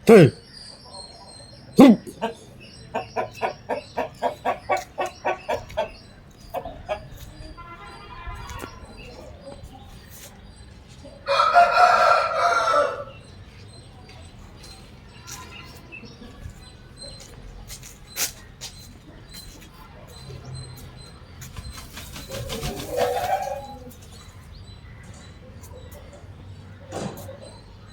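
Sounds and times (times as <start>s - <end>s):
chicken clucking: 1.0s - 7.6s, 8.6s - 24.5s
rooster crowing: 11.2s - 13.2s.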